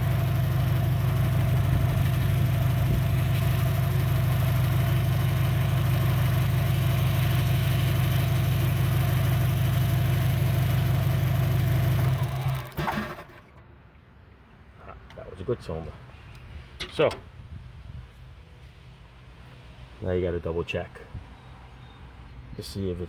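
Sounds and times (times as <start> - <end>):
car engine idling rough: 0.0 - 13.6.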